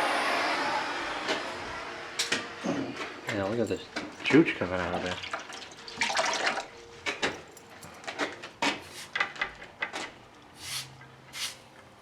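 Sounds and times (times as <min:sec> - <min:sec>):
metal tools clinking: 0:03.3 - 0:05.1, 0:06.8 - 0:10.1
short hiss: 0:10.6 - 0:11.7.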